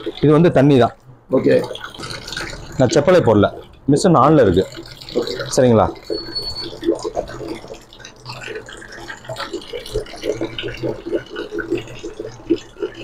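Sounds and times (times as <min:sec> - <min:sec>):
water running and splashing: 0:00.0 - 0:13.0.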